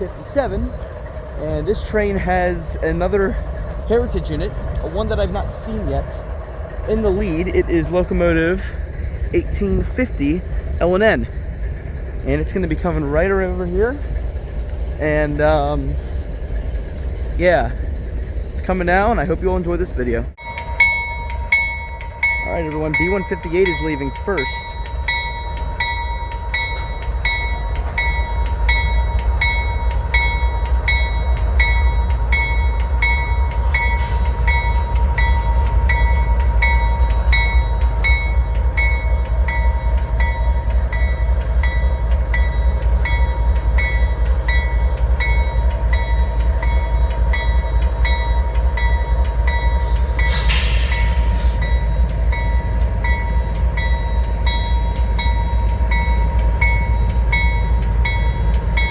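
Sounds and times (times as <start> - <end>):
freight train rumble: 0.0 - 58.9
crossing bell ringing: 20.4 - 58.9
short hiss: 50.0 - 51.6.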